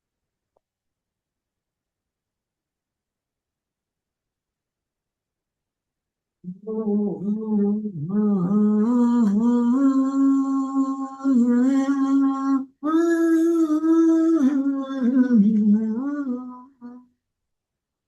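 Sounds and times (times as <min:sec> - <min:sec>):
person humming: 0:06.4 - 0:17.1.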